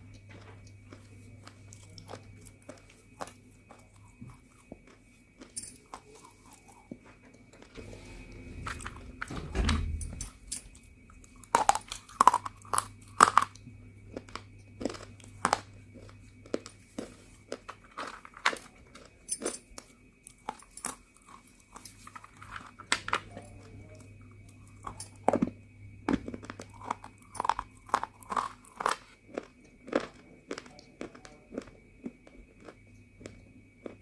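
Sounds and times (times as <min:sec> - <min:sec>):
crunching while chewing: 0:00.0 - 0:09.3, 0:10.2 - 0:34.0.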